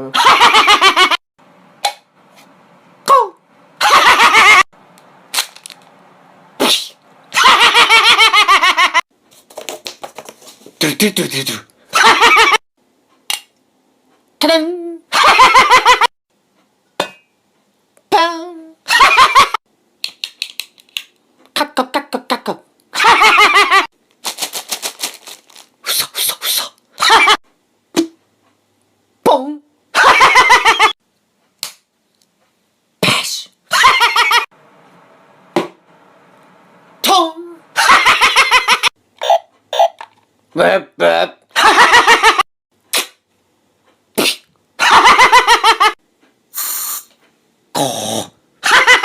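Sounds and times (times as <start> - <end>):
person making mouth sound effects: 6.6 - 7.0, 25.8 - 26.8, 39.2 - 40.1, 44.2 - 44.5, 47.7 - 48.4.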